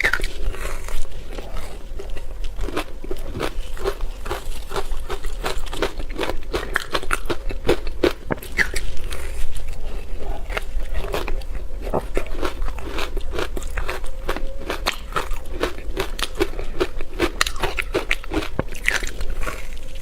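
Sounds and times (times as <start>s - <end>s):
person crunching ice: 0.0s - 20.0s.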